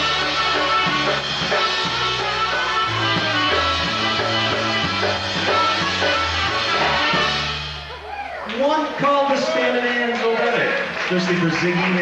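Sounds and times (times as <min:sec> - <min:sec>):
polka band playing: 0:00.0 - 0:08.1
bass line: 0:00.0 - 0:08.5.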